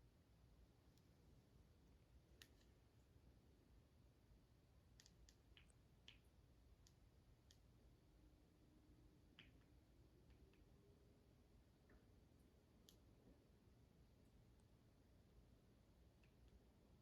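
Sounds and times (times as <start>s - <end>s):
faint clicks: 4.9s - 7.7s.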